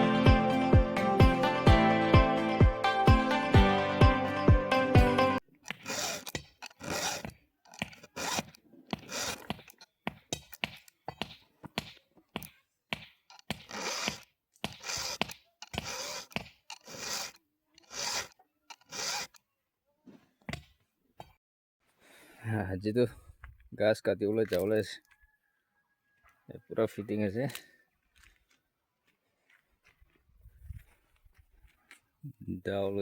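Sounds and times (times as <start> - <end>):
hand tool rasping strokes: 5.6 - 19.4.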